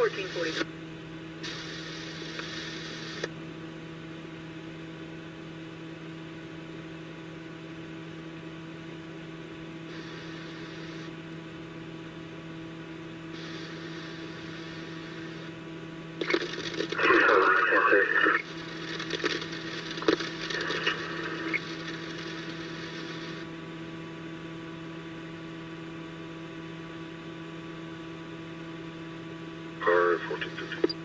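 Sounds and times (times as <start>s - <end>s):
radio scanner hiss: 0.0s - 0.7s, 1.4s - 3.3s, 9.9s - 11.2s, 13.3s - 15.6s, 16.2s - 23.5s, 29.8s - 31.0s
electrical hum: 0.0s - 31.0s.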